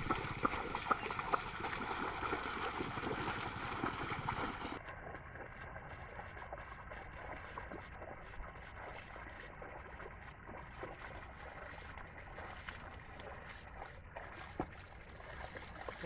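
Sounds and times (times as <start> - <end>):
small splashes: 0.0 - 16.0
water and mud sloshing: 0.0 - 16.0.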